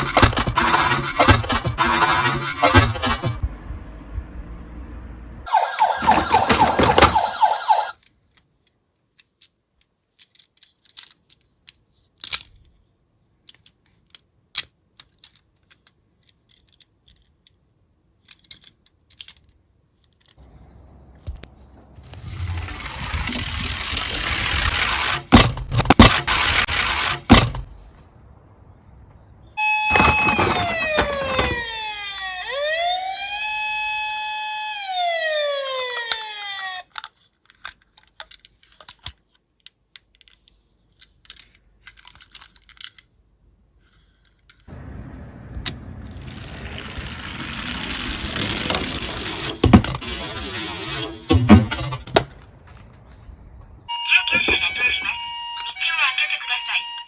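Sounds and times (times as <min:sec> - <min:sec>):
toy cars rolling down a slope: 0:00.0 - 0:03.4, 0:05.5 - 0:09.5, 0:22.0 - 0:27.6, 0:29.6 - 0:34.2, 0:35.1 - 0:39.2, 0:46.1 - 0:52.4
siren: 0:05.4 - 0:08.0, 0:29.6 - 0:36.9, 0:53.9 - 0:57.0.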